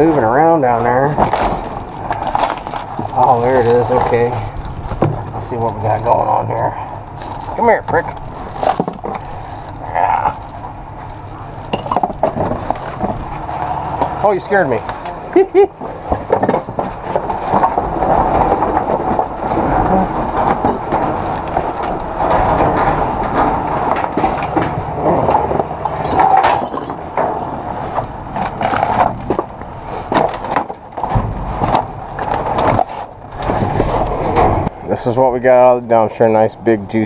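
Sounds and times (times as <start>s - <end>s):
rustling and scraping junk: 0.0s - 34.8s
small knocks and clatters: 1.2s - 6.1s, 7.2s - 9.8s, 10.4s - 14.2s, 15.8s - 34.7s.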